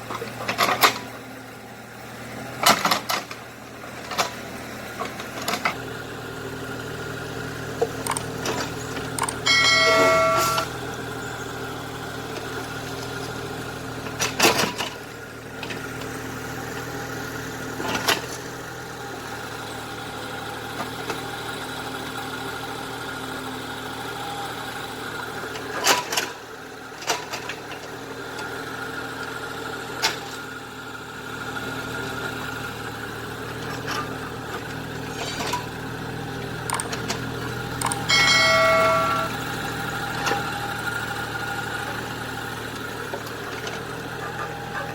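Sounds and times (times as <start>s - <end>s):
excavator engine running: 0.0s - 44.9s
loud high pitched tone: 9.4s - 10.7s, 37.8s - 39.5s.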